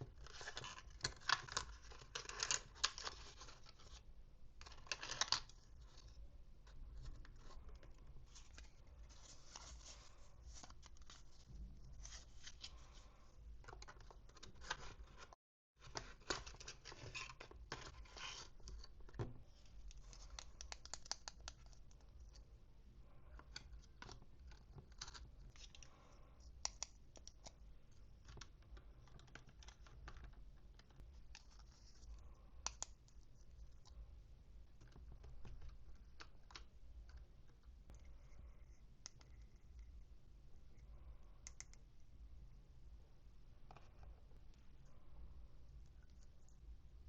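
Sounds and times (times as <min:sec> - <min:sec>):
plastic packaging clicks and scratches: 0:00.0 - 0:04.0.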